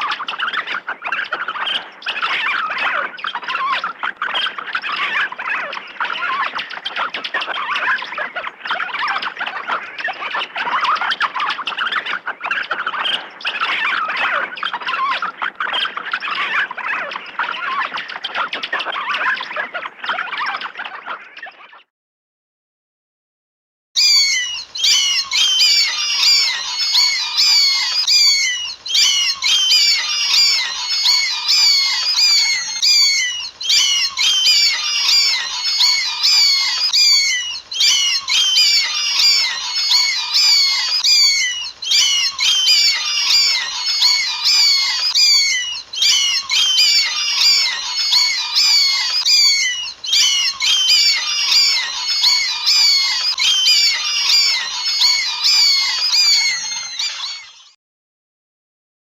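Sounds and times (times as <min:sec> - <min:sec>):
bats squeaking and chirping: 0:00.0 - 0:21.7, 0:24.0 - 0:57.7.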